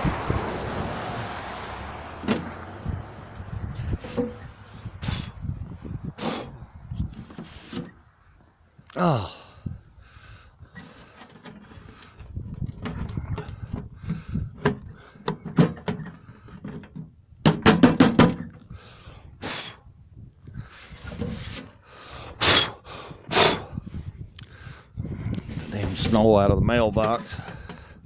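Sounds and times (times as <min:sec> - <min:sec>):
knocks and clatters on mailbox: 0:12.8 - 0:18.6, 0:27.0 - 0:27.9.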